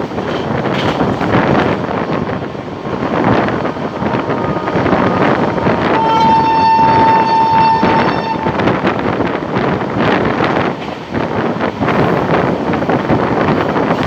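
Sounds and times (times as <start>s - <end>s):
train rumbling: 0.0s - 14.0s
train horn blast: 3.9s - 9.2s.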